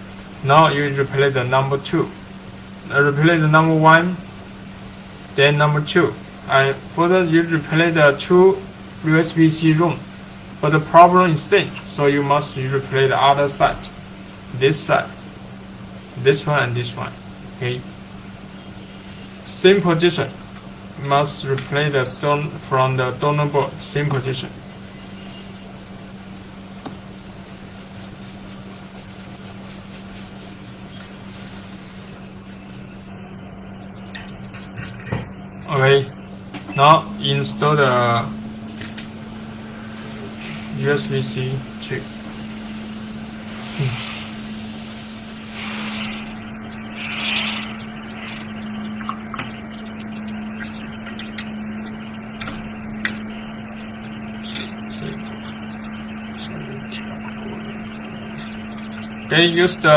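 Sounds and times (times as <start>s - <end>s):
even hiss: 0.0s - 59.9s
hot air station blowing: 0.0s - 59.9s
low electrical hum: 0.0s - 59.9s.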